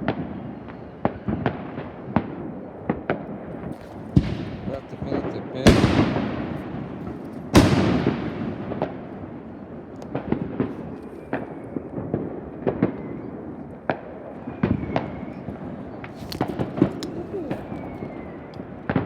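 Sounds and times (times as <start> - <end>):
firework cracks and pops: 0.0 - 19.0
firework boom: 4.1 - 9.1.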